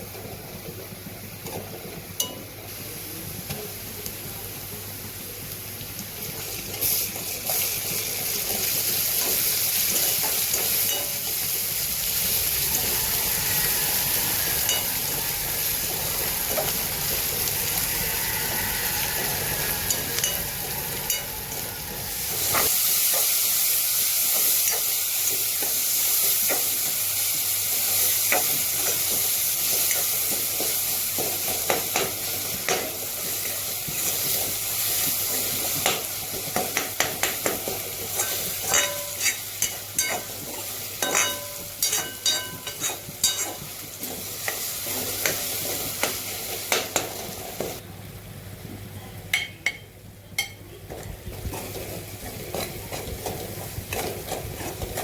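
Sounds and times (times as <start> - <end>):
food sizzling in a pan: 0.0 - 48.3, 49.4 - 55.0
spatula scraping a pan: 9.2 - 23.4, 38.1 - 44.2, 51.4 - 55.0.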